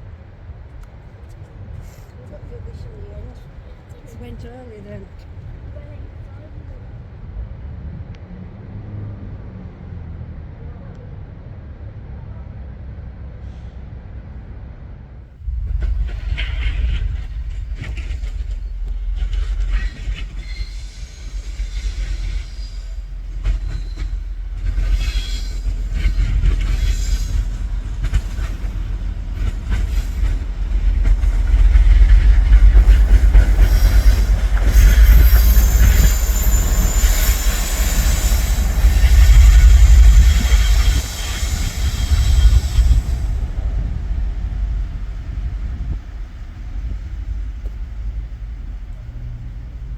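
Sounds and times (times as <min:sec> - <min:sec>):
train rumbling past: 0:00.0 - 0:49.9
wheels clattering over rail joints: 0:15.4 - 0:49.9
high-pitched wheel squeal: 0:15.6 - 0:45.8.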